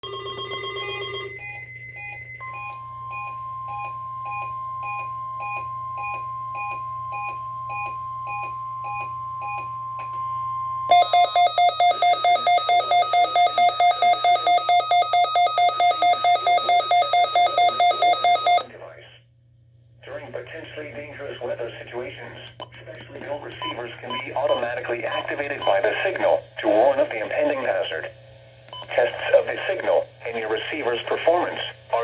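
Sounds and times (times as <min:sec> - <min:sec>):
pulsing receiver alarm: 0:10.9 - 0:18.7
quiet beeps: 0:10.9 - 0:18.7
steady high alarm tone: 0:10.9 - 0:18.7.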